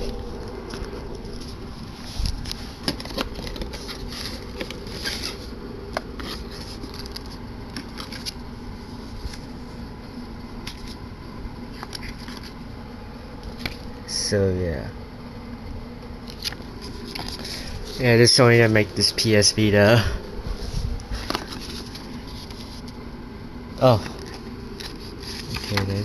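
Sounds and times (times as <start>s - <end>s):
cardboard and plastic rustling: 0.0s - 9.8s, 10.6s - 11.1s, 11.7s - 12.6s, 16.2s - 19.8s, 20.4s - 23.0s, 23.8s - 26.0s
steady background hum: 0.0s - 26.0s.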